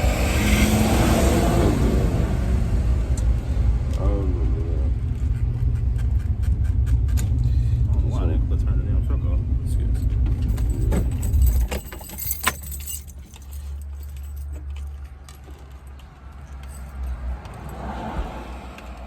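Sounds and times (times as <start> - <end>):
small metal pieces jingling: 10.0 - 17.2.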